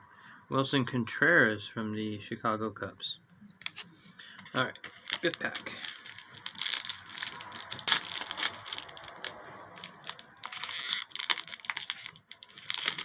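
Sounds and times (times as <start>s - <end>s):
wrapper tearing and crinkling: 3.6s - 13.0s.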